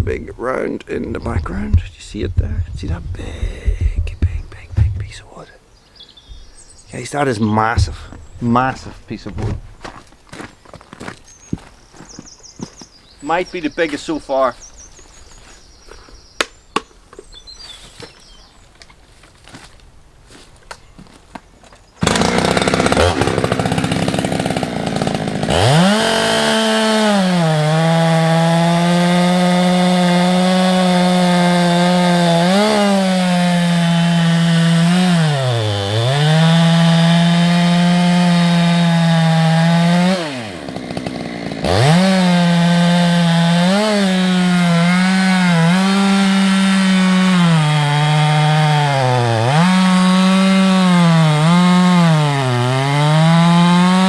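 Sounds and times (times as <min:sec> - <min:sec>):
chainsaw cutting log: 0:00.0 - 0:05.4, 0:06.6 - 0:11.7, 0:22.0 - 0:54.0.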